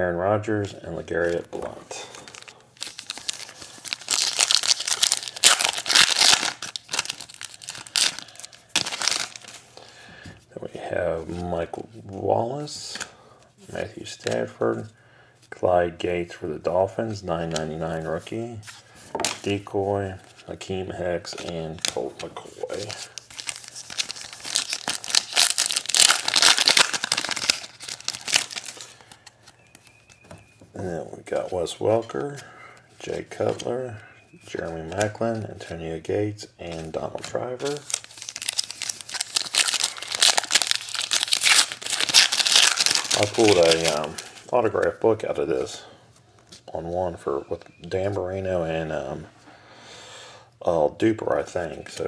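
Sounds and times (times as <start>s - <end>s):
wrapper tearing and crinkling: 2.1s - 9.6s, 22.7s - 30.0s, 37.6s - 44.5s.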